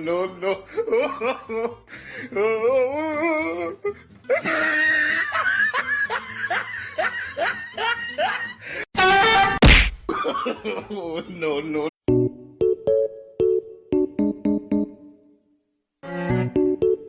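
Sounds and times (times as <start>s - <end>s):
music: 0.0s - 9.6s, 12.0s - 17.0s
person laughing hard: 0.7s - 1.8s, 4.3s - 8.8s.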